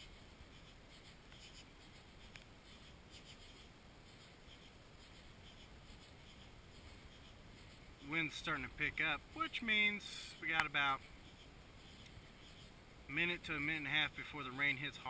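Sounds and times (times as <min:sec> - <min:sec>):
faint muffled hiss: 0:00.0 - 0:15.0.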